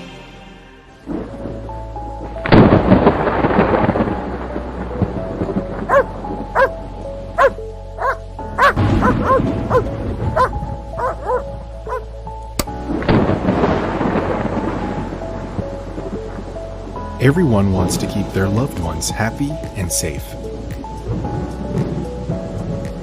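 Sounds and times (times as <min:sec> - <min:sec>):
background music: 0:00.0 - 0:23.0
thunder rumble: 0:01.1 - 0:12.1, 0:12.8 - 0:17.0
dog barking: 0:05.9 - 0:06.7, 0:07.4 - 0:12.0.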